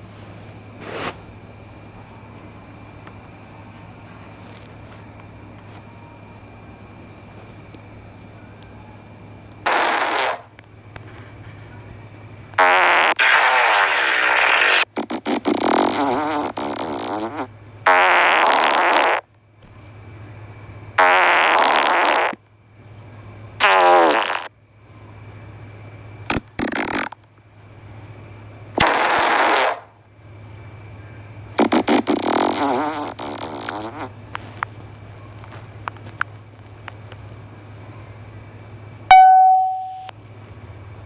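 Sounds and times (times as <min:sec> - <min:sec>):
steady low hum: 0:00.0 - 0:41.0
buzzing fart sounds: 0:09.6 - 0:10.6, 0:12.6 - 0:19.3, 0:21.0 - 0:22.4, 0:23.6 - 0:24.5, 0:26.3 - 0:27.3, 0:28.8 - 0:30.0, 0:31.5 - 0:34.2.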